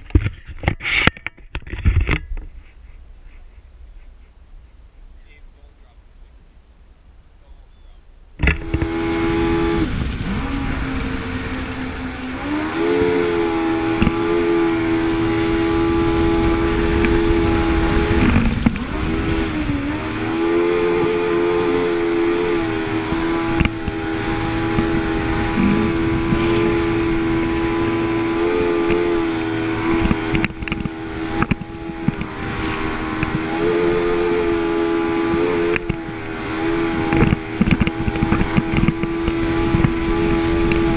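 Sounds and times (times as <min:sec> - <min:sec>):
jet ski engine running hard: 0:08.3 - 0:40.9
wind and water rushing: 0:08.3 - 0:40.9.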